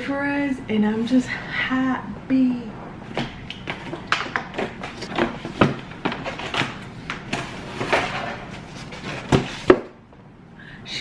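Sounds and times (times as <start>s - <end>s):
knocks and bumps of handling: 3.2s - 10.0s
packaging rustling: 3.7s - 9.8s.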